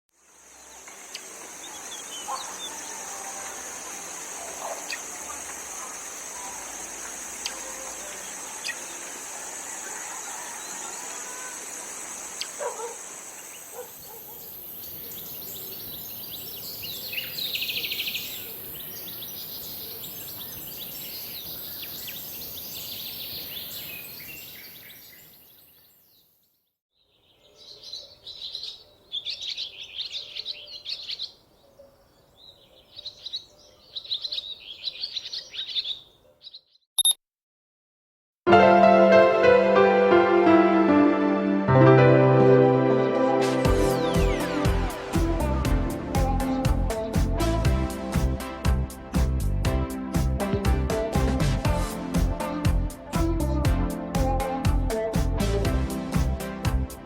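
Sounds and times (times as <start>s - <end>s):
birds chirping: 0.7s - 26.3s, 27.1s - 36.9s, 43.7s - 52.7s
high-pitched outdoor drone: 42.2s - 57.0s.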